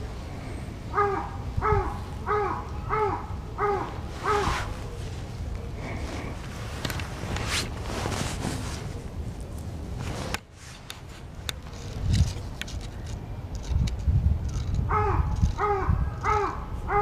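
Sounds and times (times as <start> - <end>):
rustling and scraping: 3.8 - 14.8.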